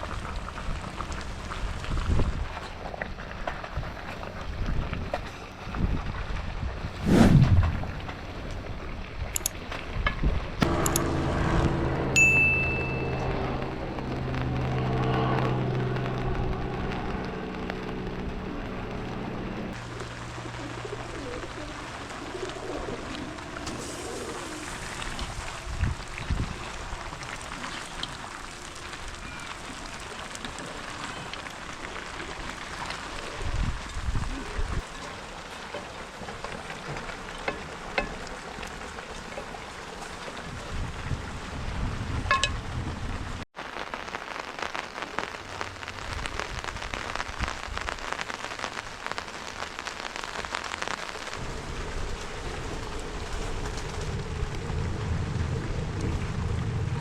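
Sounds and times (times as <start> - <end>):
low wind rumble: 0.0 - 43.5, 45.4 - 57.0
light rain pattering: 0.0 - 57.0
dull low thumps: 10.6 - 19.8.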